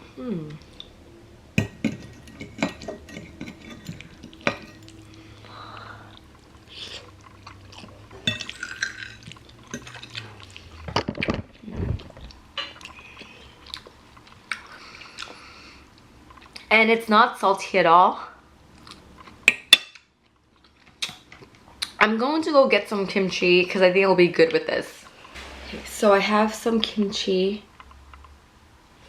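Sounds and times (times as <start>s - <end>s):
utensils scraping a bowl: 1.9s - 5.0s.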